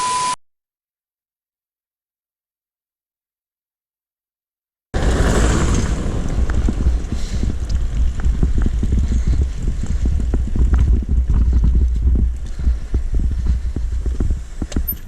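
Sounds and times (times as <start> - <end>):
wind buffeting microphone: 5.0 - 15.0.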